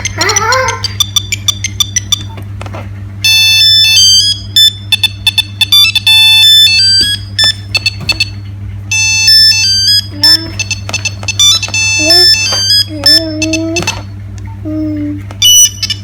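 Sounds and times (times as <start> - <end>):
electronic phone ringtone melody: 3.2 - 8.3, 8.9 - 13.6.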